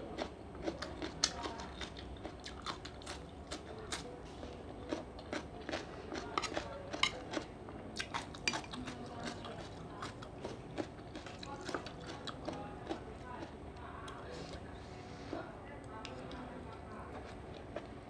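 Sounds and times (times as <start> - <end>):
person chewing: 0.2 - 4.0, 4.8 - 13.5, 17.1 - 17.9.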